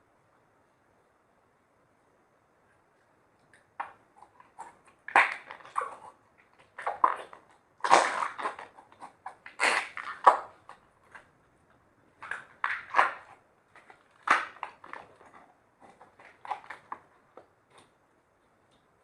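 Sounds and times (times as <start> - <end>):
slime squishing with sticky pops: 3.5 - 11.3, 12.2 - 18.0.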